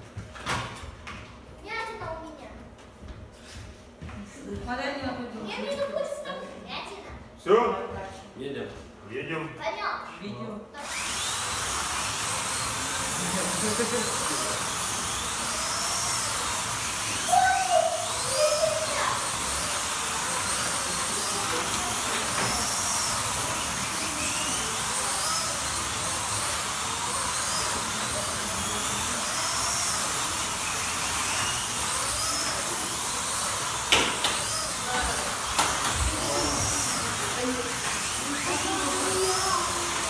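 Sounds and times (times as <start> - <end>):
slot car electric motors whining: 10.7 - 40.0.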